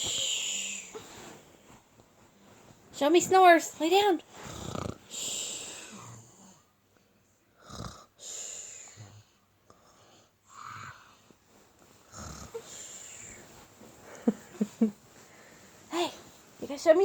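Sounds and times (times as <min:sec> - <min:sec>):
child fake-snoring: 0:04.4 - 0:06.6, 0:07.6 - 0:09.2, 0:10.5 - 0:11.2, 0:12.1 - 0:13.4.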